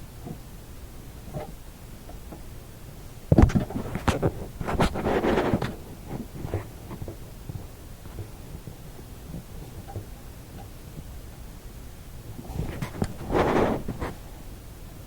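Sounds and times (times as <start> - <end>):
microphone handling knocks: 3.3 - 5.0
rustling: 3.4 - 7.2, 12.3 - 14.4.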